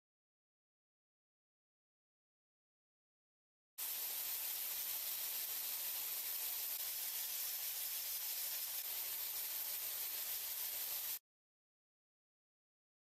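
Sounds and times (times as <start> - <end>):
steady high hiss: 3.8 - 11.2.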